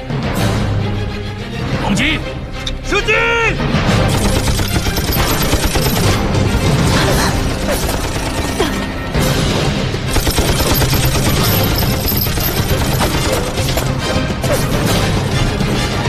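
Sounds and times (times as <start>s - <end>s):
dramatic orchestral music: 0.0s - 16.0s
machine-gun bursts: 4.1s - 6.3s, 7.6s - 8.8s, 10.1s - 14.0s
rifle shots: 4.1s - 6.3s, 10.1s - 14.0s.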